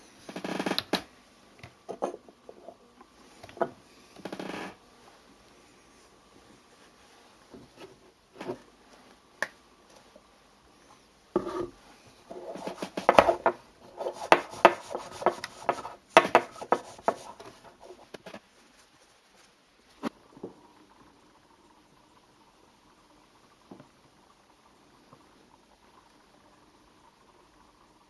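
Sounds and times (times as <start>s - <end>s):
parts scraping on workbench: 1.9s - 2.8s, 7.8s - 8.6s, 11.4s - 18.0s.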